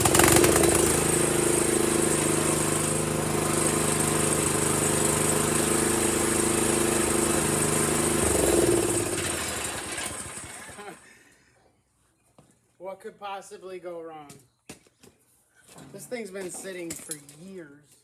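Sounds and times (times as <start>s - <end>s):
small engine running: 0.0s - 11.0s.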